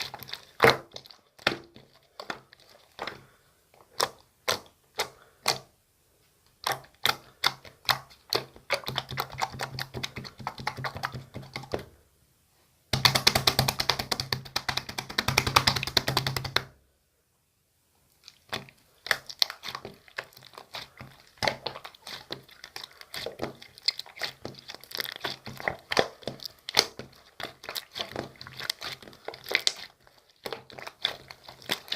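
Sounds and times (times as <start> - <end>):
slime squished by hand: 0.0 - 5.7, 6.6 - 11.9, 18.2 - 31.9.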